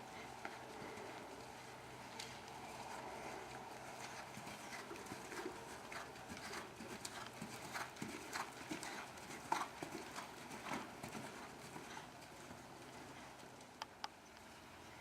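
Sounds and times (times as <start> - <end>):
horse hoofbeats: 2.8 - 12.7.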